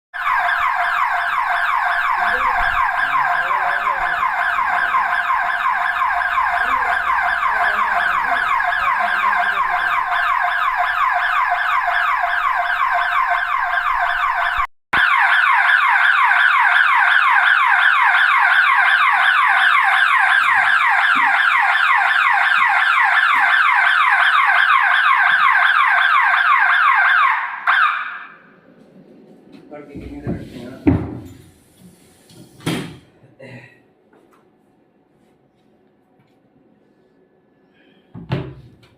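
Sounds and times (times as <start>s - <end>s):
electronic alarm siren: 0.2s - 28.5s.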